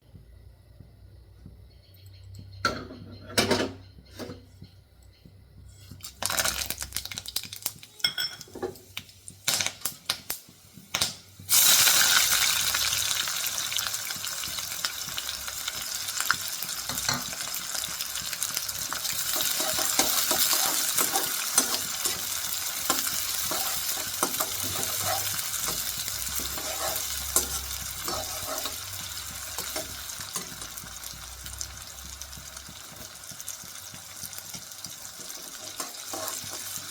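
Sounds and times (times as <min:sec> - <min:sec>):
utensils clinking on a pan: 0:02.6 - 0:04.4, 0:07.9 - 0:08.9, 0:18.8 - 0:31.2, 0:34.5 - 0:36.9
food sizzling in hot oil: 0:05.8 - 0:36.9
stirring scrapes in a pan: 0:22.9 - 0:25.7, 0:26.3 - 0:28.8, 0:35.4 - 0:36.9.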